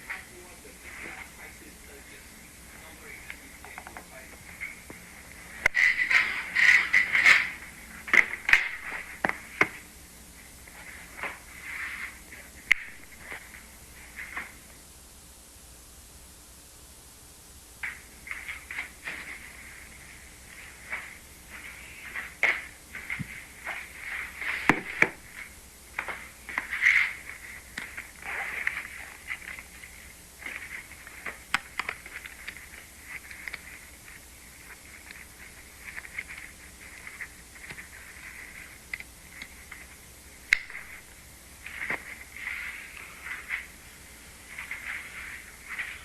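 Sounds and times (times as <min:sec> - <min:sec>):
crackling static: 0:00.0 - 0:46.0.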